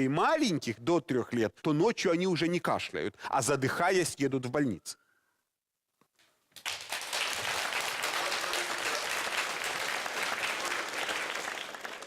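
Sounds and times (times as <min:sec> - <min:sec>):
audience applauding: 0:06.6 - 0:12.0.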